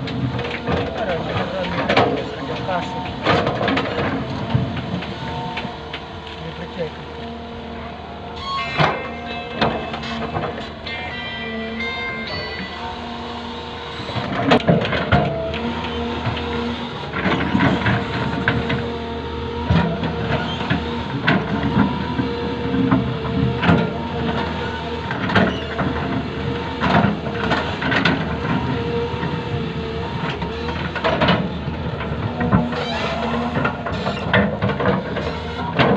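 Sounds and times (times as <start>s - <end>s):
machine knocks and clanks: 0.0s - 6.1s, 14.1s - 18.9s, 30.3s - 35.9s
hydraulic excavator running: 0.0s - 35.9s.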